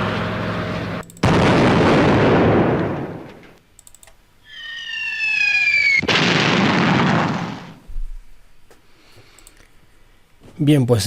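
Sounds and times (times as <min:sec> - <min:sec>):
loud blast-like burst: 0:01.2 - 0:03.4, 0:05.4 - 0:07.9
soft clicks: 0:03.3 - 0:04.2, 0:09.3 - 0:09.8
whistle sliding down in pitch: 0:04.5 - 0:06.0.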